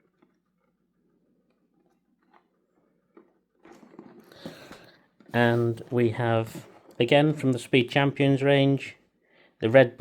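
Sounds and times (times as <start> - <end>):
cardboard boxes rustling: 3.7 - 7.6.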